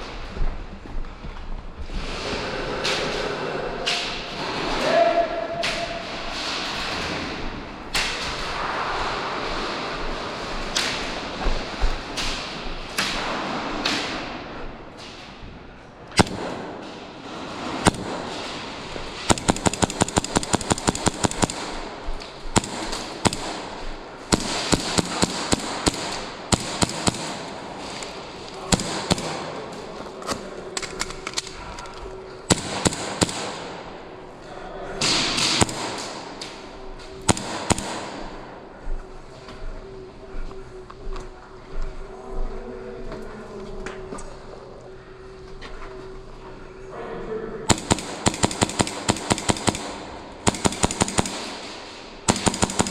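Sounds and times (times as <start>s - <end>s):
airsoft gun automatic burst: 19.3s - 27.7s, 28.6s - 29.6s, 32.5s - 33.8s, 37.3s - 38.2s, 47.7s - 52.9s.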